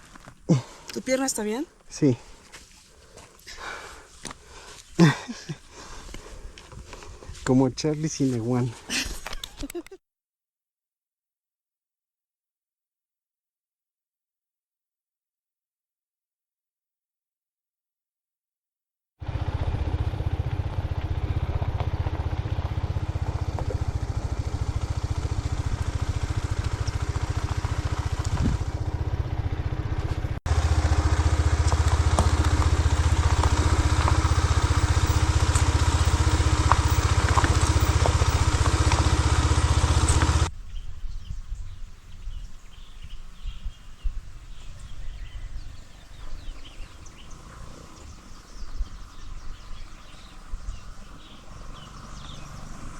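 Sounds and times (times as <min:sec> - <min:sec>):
birds chirping: 0:03.0 - 0:09.7, 0:22.1 - 0:29.7, 0:30.5 - 0:52.9
motorcycle engine running: 0:19.2 - 0:40.5, 0:46.1 - 0:52.9.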